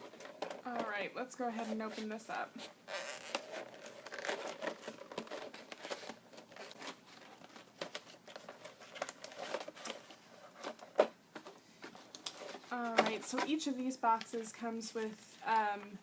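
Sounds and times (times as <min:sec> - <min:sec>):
plastic wrapping tearing and crinkling: 0:02.6 - 0:11.1.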